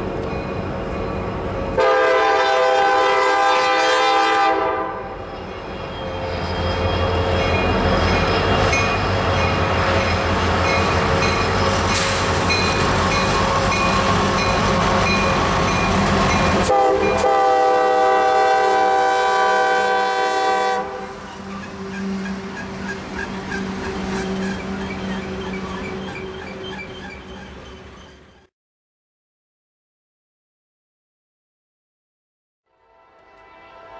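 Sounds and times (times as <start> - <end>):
train engine and wheel rumble: 0.0 - 28.5
train air horn chord: 1.8 - 5.2, 16.7 - 21.2, 32.7 - 33.9.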